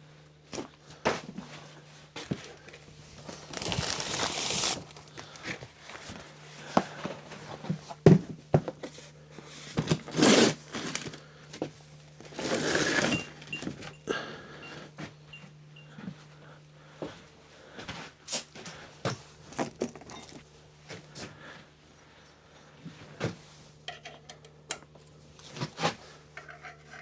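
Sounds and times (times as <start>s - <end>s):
rustling and scraping: 2.2s - 13.9s, 25.4s - 27.0s
tools clicking and knocking: 23.9s - 25.1s.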